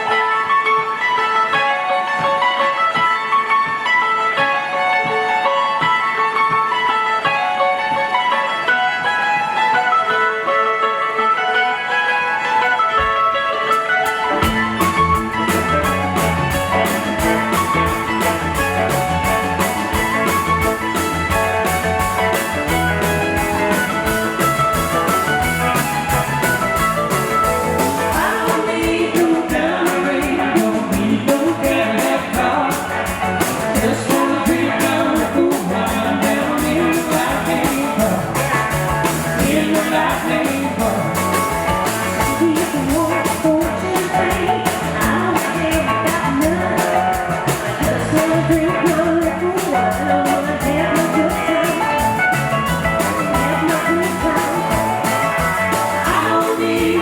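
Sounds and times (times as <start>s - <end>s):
live blues guitar with beat: 0.0s - 57.0s
person singing: 27.7s - 57.0s.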